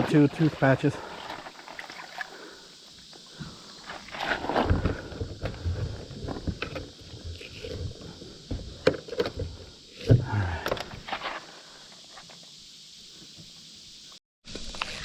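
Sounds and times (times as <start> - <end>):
knocks and thumps on kayak: 3.4 - 10.9.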